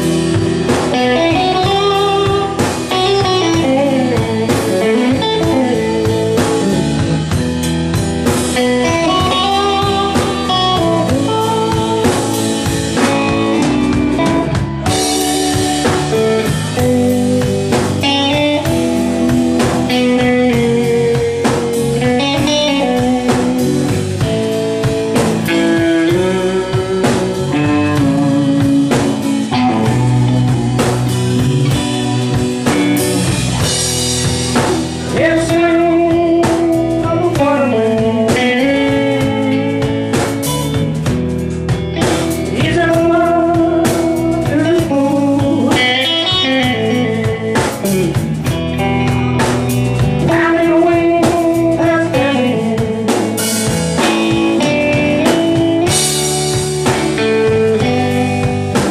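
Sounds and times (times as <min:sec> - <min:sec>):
drum kit: 0:00.0 - 0:58.9
guitar melodic line: 0:00.0 - 0:58.9.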